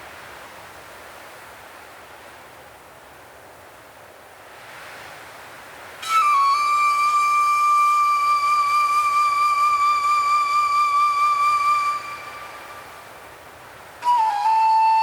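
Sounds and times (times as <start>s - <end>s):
soft wind-like hiss: 0.0s - 15.0s
flute long held note: 6.0s - 13.2s, 14.0s - 15.0s.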